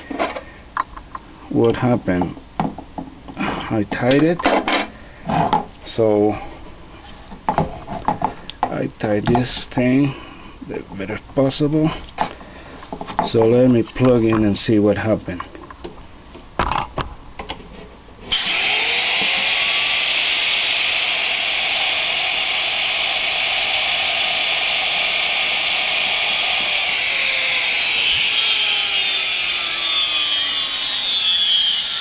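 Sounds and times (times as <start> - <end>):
router spindle high-pitched whine: 18.3 - 32.0.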